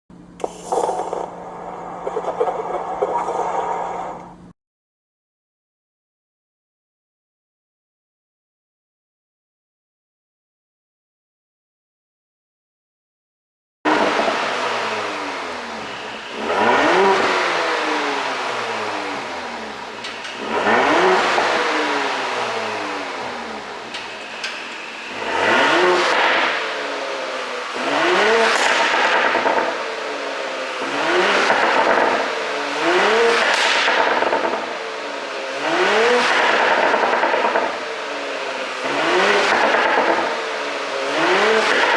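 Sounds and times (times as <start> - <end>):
exhaust popping and crackling: 13.9 - 26.7, 28.0 - 30.0, 30.8 - 34.8, 35.7 - 38.0, 38.8 - 40.6
car engine revving: 13.9 - 41.9.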